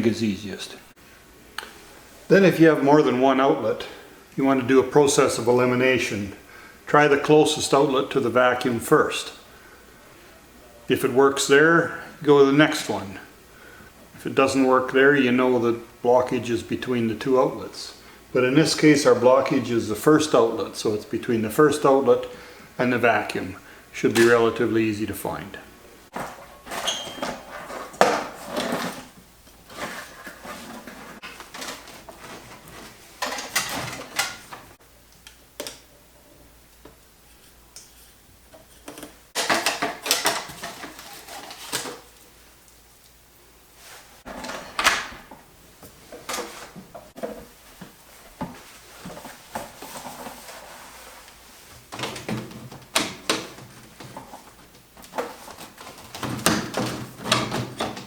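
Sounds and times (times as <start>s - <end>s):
handling knocks and scrapes: 26.1s - 34.8s, 37.2s - 42.2s, 43.8s - 58.0s.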